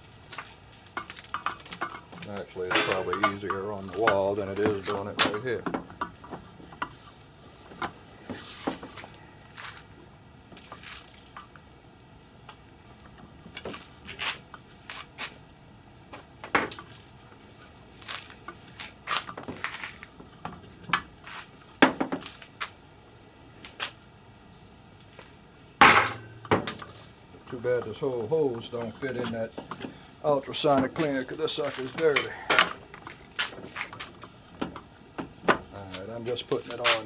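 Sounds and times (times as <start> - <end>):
hose reel knocking and rattling: 0.3 - 7.0.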